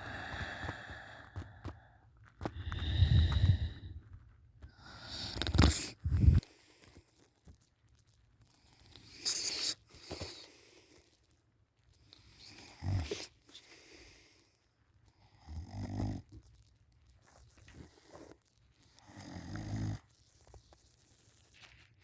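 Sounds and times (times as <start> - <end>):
soft breathing: 0.0 - 7.4, 12.0 - 15.4
low rattling snores: 15.4 - 16.3, 19.0 - 20.0.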